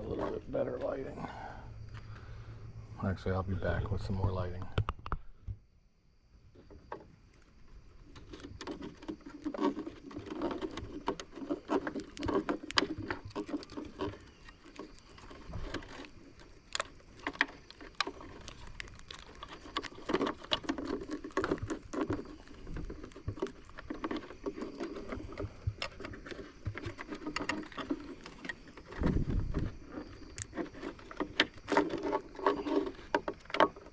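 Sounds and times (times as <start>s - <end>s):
small parts clicking and rustling: 7.4s - 33.9s.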